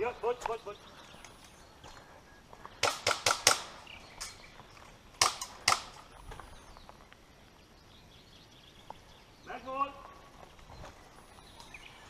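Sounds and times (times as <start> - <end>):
airsoft gun shots: 2.8 - 3.8, 5.2 - 6.0.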